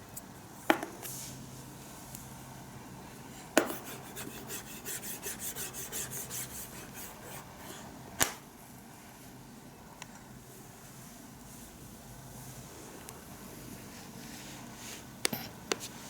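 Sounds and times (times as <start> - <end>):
scratchy rubbing strokes: 3.8 - 7.8.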